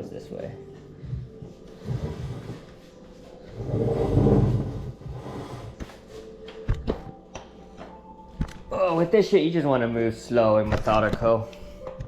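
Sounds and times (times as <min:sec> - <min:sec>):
low rumbling scrape: 0:03.5 - 0:05.8.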